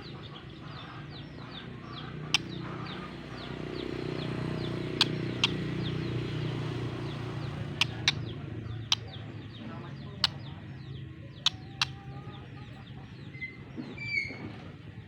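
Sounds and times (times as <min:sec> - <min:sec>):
small bird chirping: 0:00.0 - 0:14.4
sharp clicks: 0:05.0 - 0:05.6, 0:07.4 - 0:08.2.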